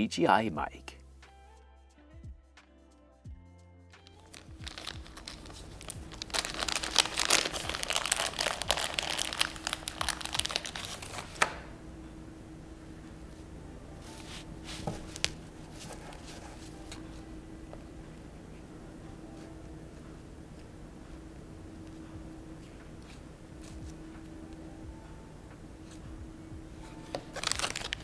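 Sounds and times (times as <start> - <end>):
crinkling at a microphone: 4.1 - 11.3, 27.2 - 28.0.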